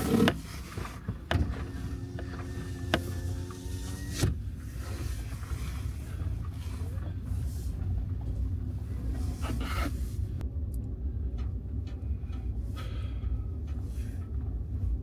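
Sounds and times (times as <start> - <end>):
vehicle engine and tyres rumbling: 0.0 - 15.0.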